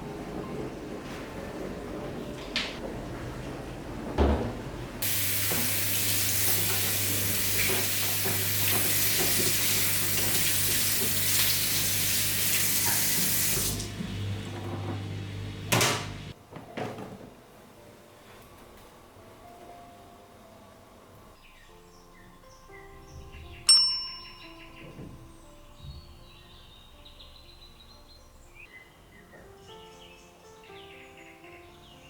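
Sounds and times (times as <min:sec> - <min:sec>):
water running into sink: 0:04.2 - 0:16.4.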